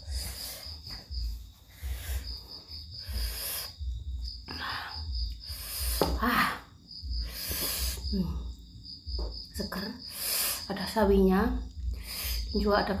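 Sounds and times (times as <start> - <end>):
hissing breaths through mouth: 3.0 - 4.0, 7.1 - 8.2.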